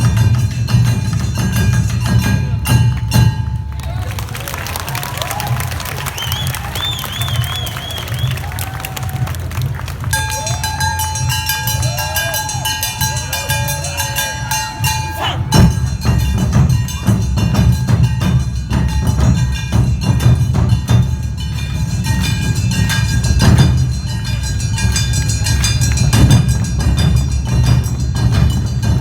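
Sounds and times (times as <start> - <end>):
drums beating: 0.0 - 29.0
hand gongs ringing: 10.2 - 29.0.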